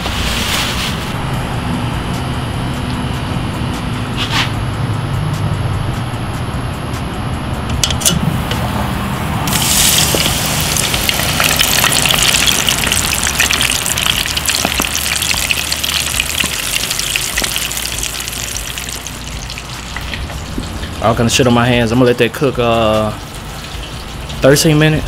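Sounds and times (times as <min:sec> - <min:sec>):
chicken sizzling in hot oil: 0:09.4 - 0:25.0.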